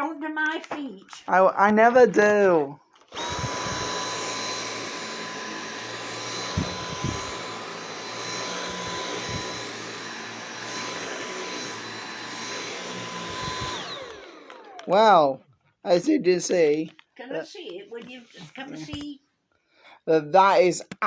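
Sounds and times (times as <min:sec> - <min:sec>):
vacuum cleaner running: 0:03.1 - 0:15.3.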